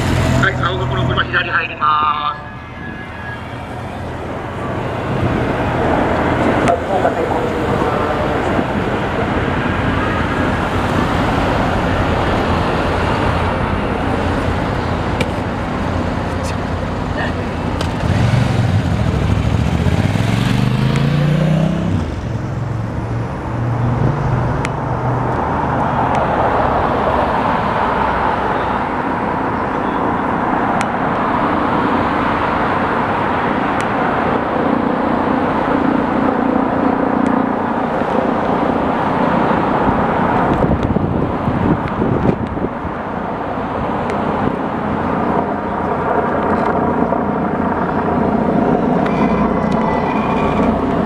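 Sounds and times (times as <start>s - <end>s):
vehicle engine accelerating: 0.0s - 1.4s, 2.4s - 28.4s, 44.3s - 51.0s
roadside vehicle noise: 0.0s - 51.0s.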